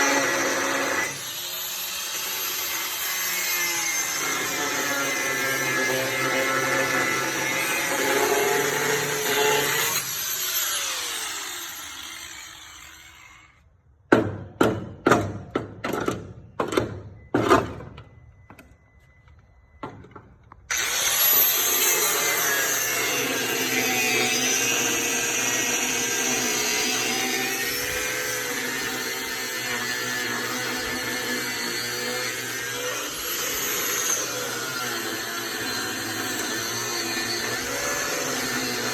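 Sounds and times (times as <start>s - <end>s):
power tool cutting metal: 0.0s - 13.6s, 20.7s - 38.9s
sharp metallic knocks: 14.1s - 18.1s.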